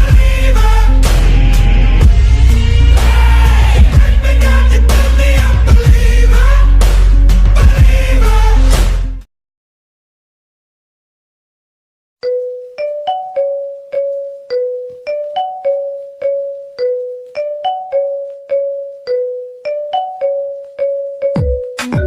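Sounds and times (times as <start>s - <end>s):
marimba ringtone melody: 12.2s - 22.0s.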